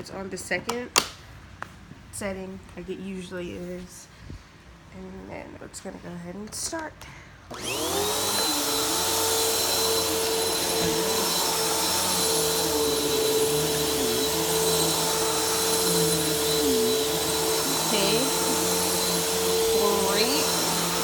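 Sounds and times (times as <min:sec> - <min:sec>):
vacuum cleaner running: 0:07.5 - 0:21.0.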